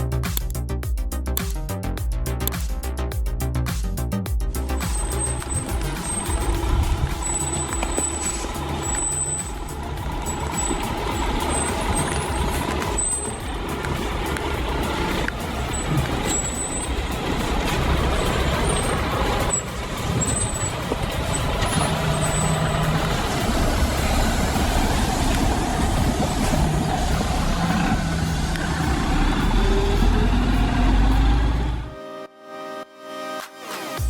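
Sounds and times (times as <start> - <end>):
heavy diesel machinery rumbling: 4.5 - 32.0.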